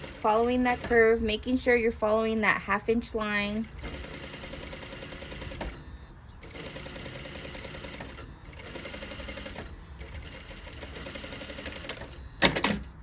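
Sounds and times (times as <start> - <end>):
sewing machine stitching: 0.0 - 1.2, 3.5 - 5.8, 6.4 - 13.0.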